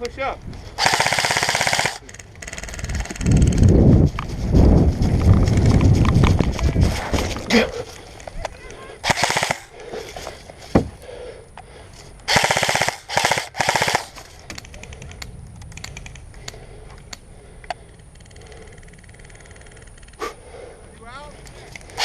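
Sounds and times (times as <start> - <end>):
airsoft gun full-auto bursts: 0.8 - 3.8, 9.0 - 9.8, 12.3 - 14.3
sharp crack: 8.4 - 9.8.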